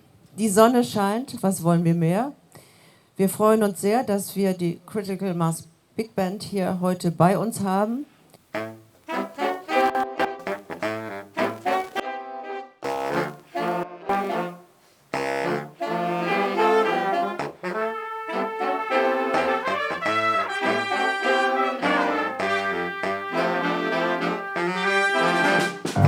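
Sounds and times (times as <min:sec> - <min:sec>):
big band horns playing: 0:08.5 - 0:26.0.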